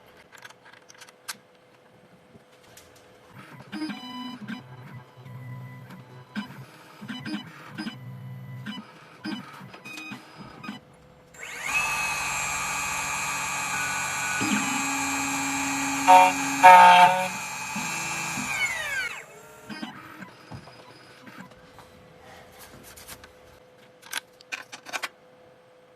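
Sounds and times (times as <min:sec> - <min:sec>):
cutter spindle whining and grinding: 0:11.4 - 0:19.4.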